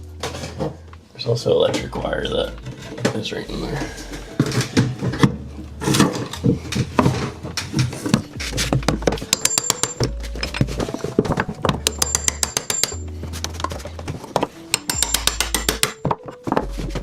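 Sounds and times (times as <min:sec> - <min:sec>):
background music with a beat: 0:06.4 - 0:17.0.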